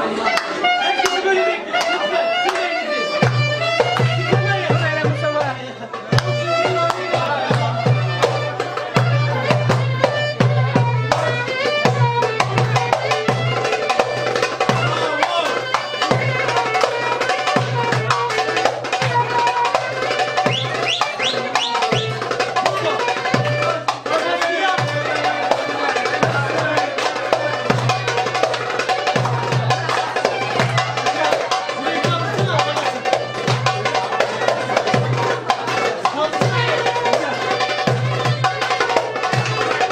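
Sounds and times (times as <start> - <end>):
hand drum percussion: 0.0 - 39.9.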